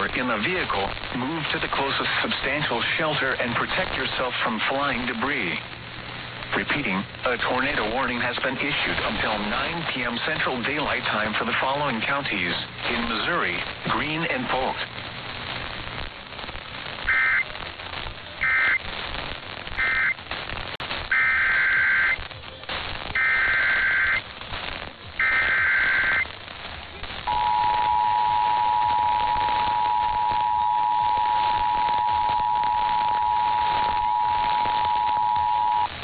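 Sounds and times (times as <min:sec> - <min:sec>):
data bursts: 0:16.9 - 0:17.6, 0:18.4 - 0:18.9, 0:19.7 - 0:24.3, 0:25.1 - 0:26.4, 0:27.2 - 0:36.0
two-tone attention signal: 0:27.3 - 0:35.9.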